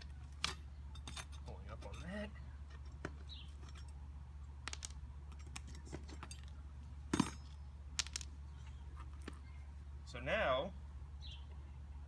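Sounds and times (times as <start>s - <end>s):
metal nails clinking: 0.0s - 4.0s
steady low hum: 0.0s - 12.0s.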